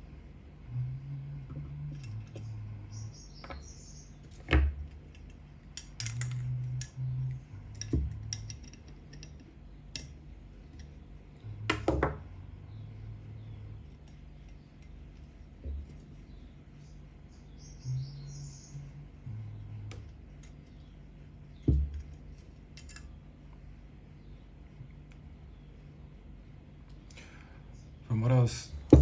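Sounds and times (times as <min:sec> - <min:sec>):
metal parts clinking on workbench: 0:05.8 - 0:06.5.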